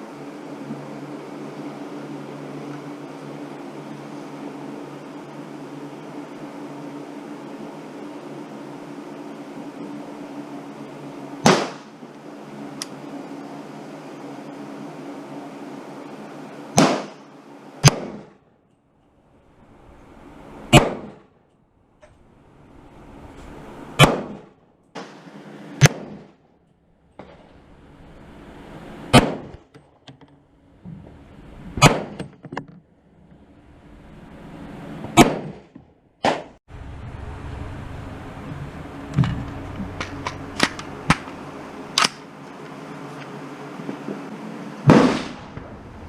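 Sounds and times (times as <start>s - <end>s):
rifle shots: 11.4s - 12.0s, 16.8s - 18.3s, 20.7s - 21.2s, 24.0s - 26.3s, 29.1s - 29.5s, 31.8s - 32.2s, 35.2s - 35.6s, 40.0s - 42.3s, 44.8s - 45.6s.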